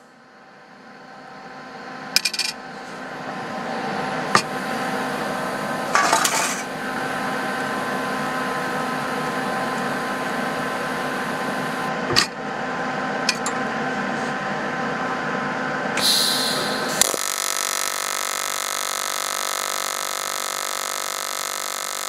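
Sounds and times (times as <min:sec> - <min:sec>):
welding arc buzzing: 0:04.2 - 0:11.9, 0:16.0 - 0:22.0
crackling hiss: 0:16.0 - 0:22.0.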